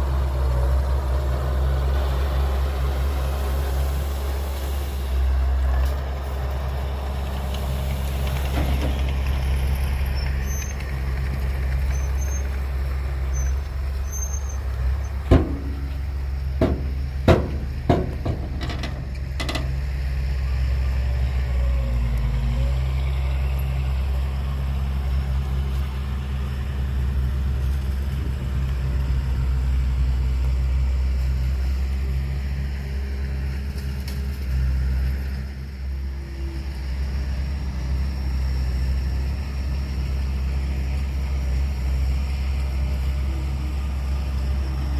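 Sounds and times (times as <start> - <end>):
heavy diesel engine droning: 0.0 - 44.9
sharp knocks or clanks: 15.3 - 19.8.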